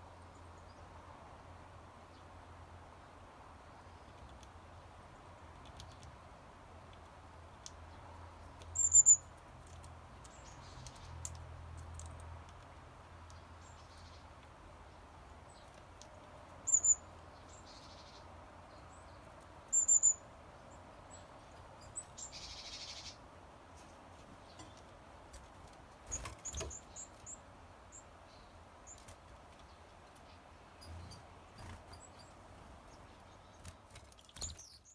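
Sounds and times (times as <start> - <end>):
bird chirping high and thin: 8.8 - 9.2, 16.7 - 18.2, 19.7 - 20.2.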